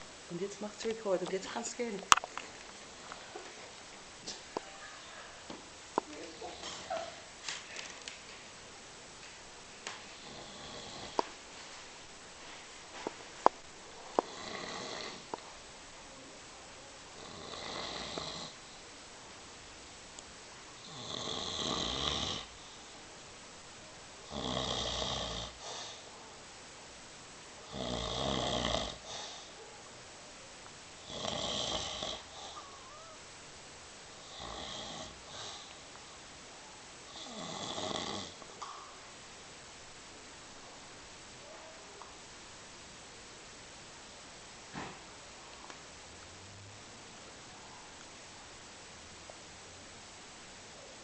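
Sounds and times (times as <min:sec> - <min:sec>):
man snoring loudly: 0:10.2 - 0:11.2, 0:14.3 - 0:15.3, 0:17.2 - 0:18.6, 0:20.8 - 0:22.6, 0:24.2 - 0:25.7, 0:27.7 - 0:29.3, 0:31.0 - 0:32.6, 0:34.2 - 0:35.7, 0:37.1 - 0:38.4.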